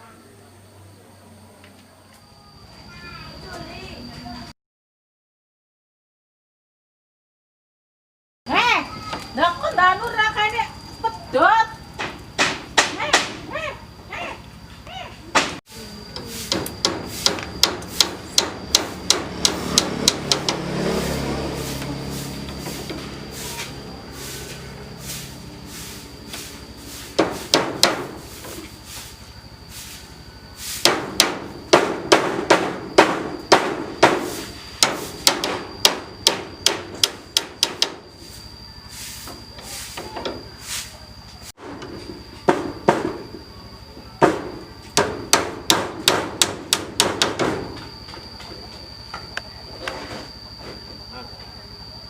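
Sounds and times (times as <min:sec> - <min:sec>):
sharp knocks: 0:12.0 - 0:13.4, 0:15.3 - 0:15.6, 0:16.5 - 0:20.7, 0:27.2 - 0:28.2, 0:30.8 - 0:38.0, 0:41.6 - 0:43.2, 0:44.2 - 0:47.8.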